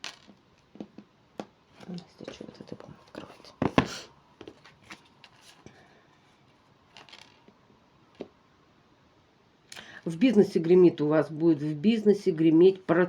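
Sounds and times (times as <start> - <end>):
cards rustling on a table: 6.9 - 7.5.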